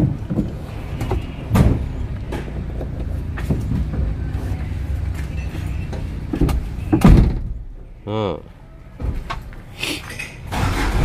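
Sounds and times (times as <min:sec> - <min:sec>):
engine idling: 0:10.5 - 0:11.0.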